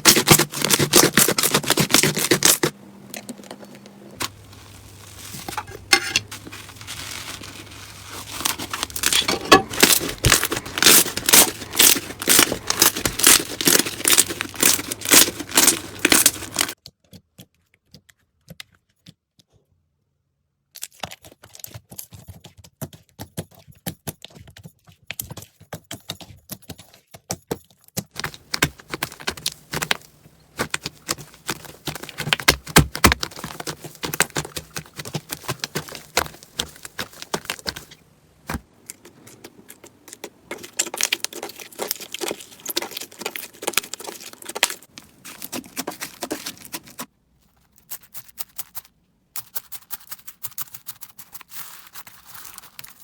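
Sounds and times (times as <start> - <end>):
slime squishes: 0.0 - 18.3, 28.1 - 53.0
slime crackling and popping: 6.3 - 16.8, 28.2 - 47.1.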